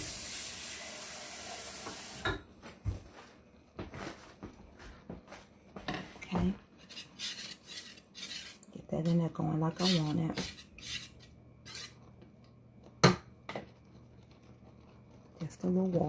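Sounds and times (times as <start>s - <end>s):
faucet running: 0.0s - 2.3s
utensil scraping a saucepan: 6.8s - 12.1s.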